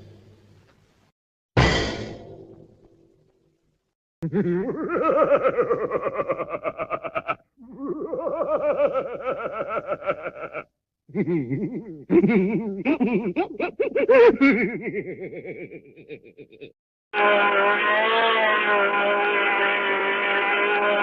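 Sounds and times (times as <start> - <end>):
cartoon laugh in rapid pulses: 4.2 - 16.8.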